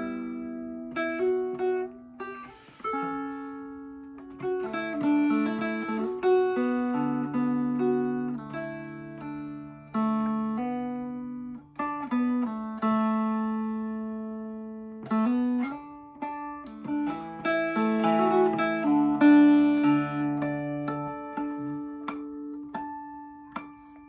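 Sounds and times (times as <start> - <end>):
mountain dulcimer playing: 15.1 - 24.0.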